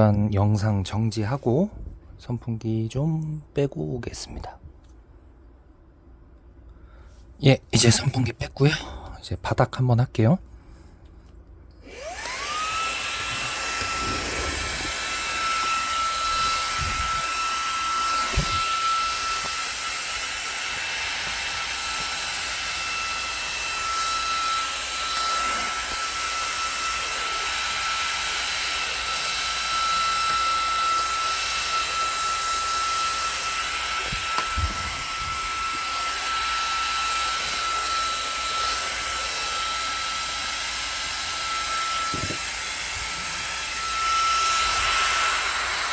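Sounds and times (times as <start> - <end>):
vacuum cleaner motor whining: 11.8 - 45.9.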